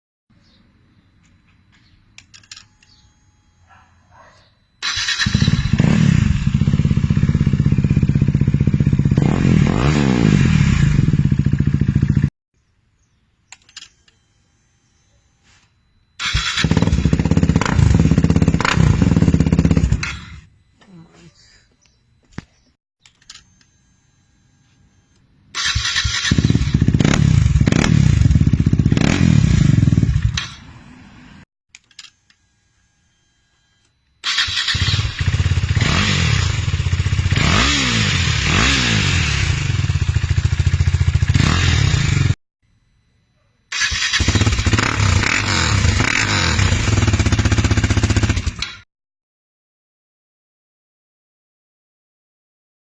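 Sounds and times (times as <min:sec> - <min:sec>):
motorcycle engine idling: 0:05.3 - 0:09.2, 0:10.9 - 0:12.3, 0:16.4 - 0:20.0, 0:36.5 - 0:37.4, 0:39.6 - 0:42.4.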